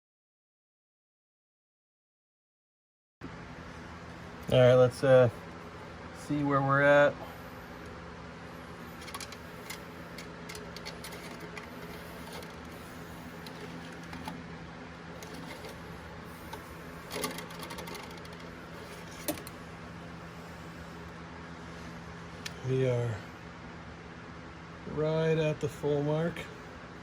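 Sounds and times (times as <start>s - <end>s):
steady hum: 3.2s - 27.0s.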